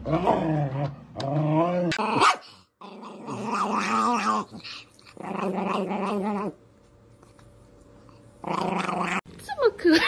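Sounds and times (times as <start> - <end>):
dog growl-like calls: 0.0 - 6.6, 8.4 - 9.2.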